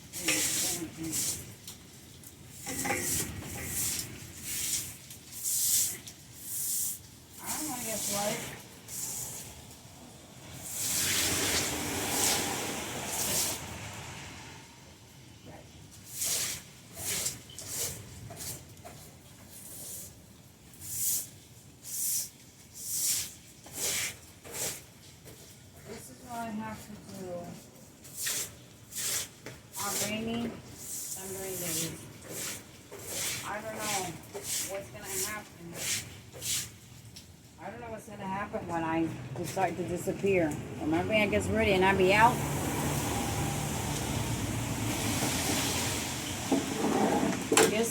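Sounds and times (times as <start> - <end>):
broom sweeping leaves: 0.1 - 1.6, 2.5 - 9.6, 10.5 - 13.8, 16.0 - 25.5, 28.0 - 36.8.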